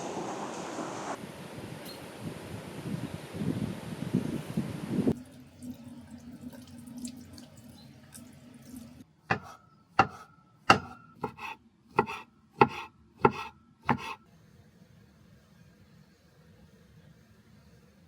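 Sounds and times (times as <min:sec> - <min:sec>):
knife chopping on cutting board: 0:09.3 - 0:14.2.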